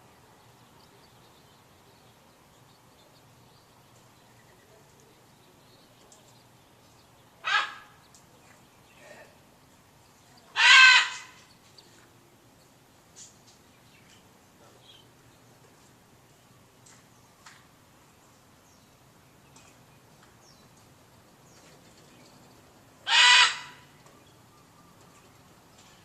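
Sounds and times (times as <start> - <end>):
macaw squawking: 7.4 - 8.0, 10.6 - 11.4, 23.1 - 23.9
faint bird calls: 7.4 - 9.5, 10.2 - 12.2, 23.0 - 26.0.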